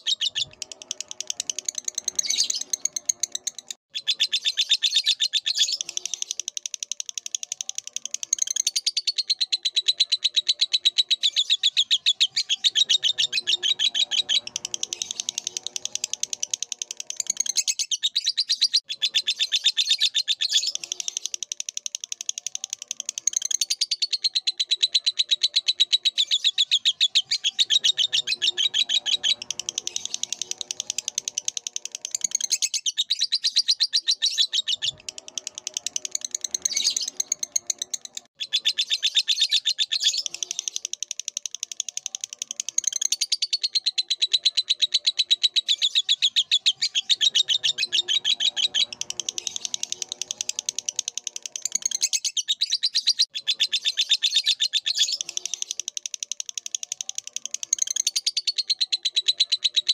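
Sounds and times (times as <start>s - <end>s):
bird chattering trill: 0.0s - 59.9s.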